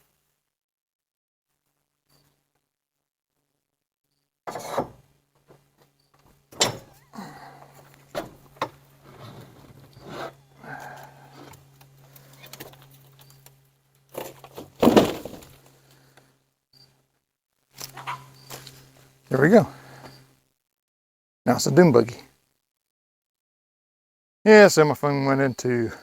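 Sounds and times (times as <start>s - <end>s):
knocks scraping and rustling: 4.5s - 5.9s, 7.6s - 15.7s.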